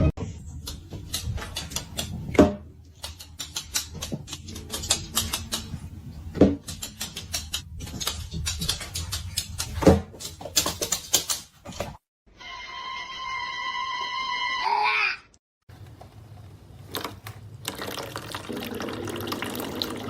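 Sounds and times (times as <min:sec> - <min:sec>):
rapid irregular clicking and tapping: 0:00.5 - 0:05.9, 0:06.6 - 0:11.7.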